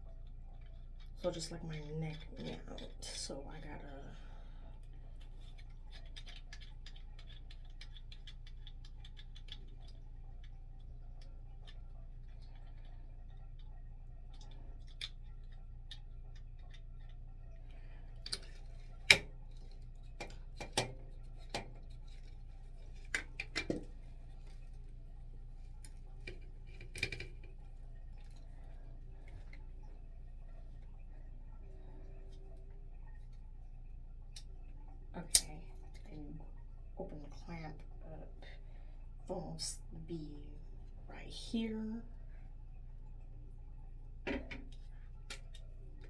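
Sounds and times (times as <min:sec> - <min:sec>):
steady low hum: 0:00.0 - 0:46.0
clicks and knocks of handling: 0:05.2 - 0:13.7, 0:14.3 - 0:30.0, 0:44.2 - 0:46.0.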